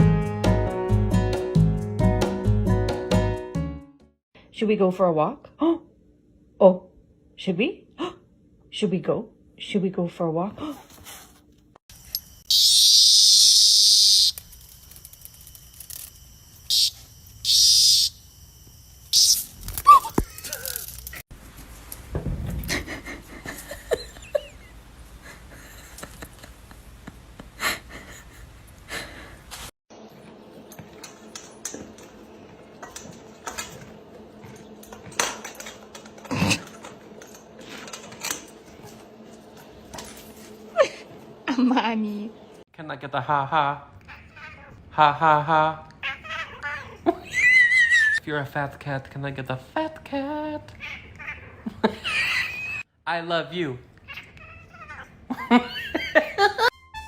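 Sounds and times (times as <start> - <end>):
dog squealing: 19.2 - 20.8, 44.0 - 44.8, 46.0 - 48.2, 50.9 - 52.8, 54.1 - 55.2.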